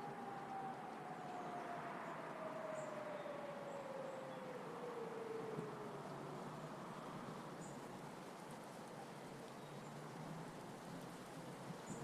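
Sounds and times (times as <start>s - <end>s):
distant warning siren: 0.0s - 7.4s.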